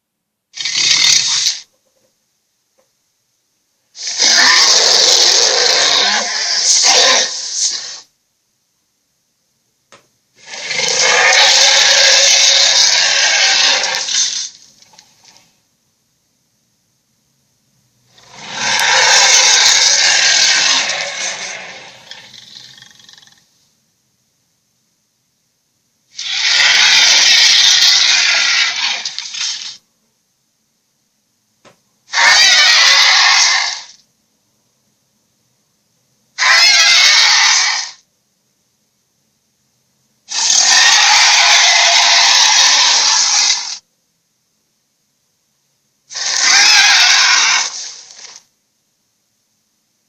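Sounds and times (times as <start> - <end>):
harsh rasping creature cries: 0.6 - 1.7, 4.0 - 8.1, 10.4 - 14.6, 18.2 - 23.4, 26.2 - 29.8, 32.1 - 34.0, 36.4 - 38.0, 40.3 - 43.8, 46.1 - 48.4.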